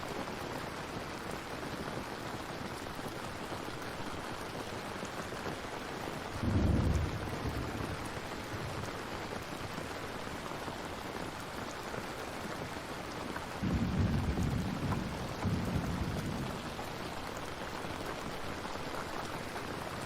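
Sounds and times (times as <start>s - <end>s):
steady rain falling: 0.0s - 20.0s
thunder rumbling: 6.4s - 9.5s, 13.6s - 18.8s.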